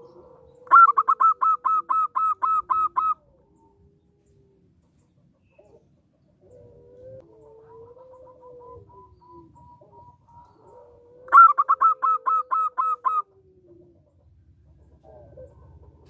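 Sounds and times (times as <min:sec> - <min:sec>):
dove cooing: 0:00.0 - 0:04.7, 0:05.3 - 0:16.0.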